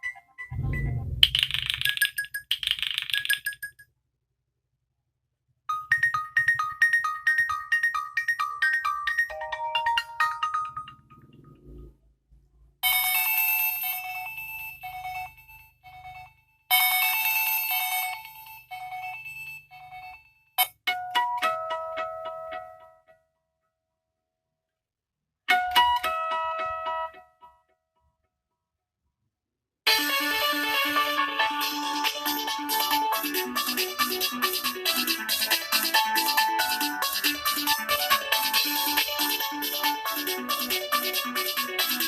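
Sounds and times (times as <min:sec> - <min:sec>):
pulsing electronic ringtone melody: 0:00.0 - 0:03.8, 0:05.7 - 0:11.6, 0:12.8 - 0:20.4, 0:29.9 - 0:42.0
chiming phone ringtone: 0:05.7 - 0:11.3, 0:12.8 - 0:20.8
plucked ringtone melody: 0:05.7 - 0:11.3, 0:31.4 - 0:42.0.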